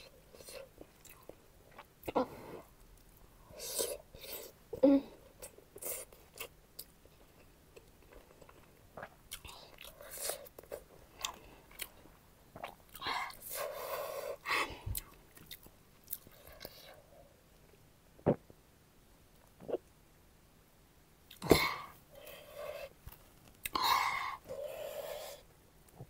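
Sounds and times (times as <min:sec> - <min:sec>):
person chewing food: 0:05.4 - 0:17.0, 0:21.3 - 0:24.7.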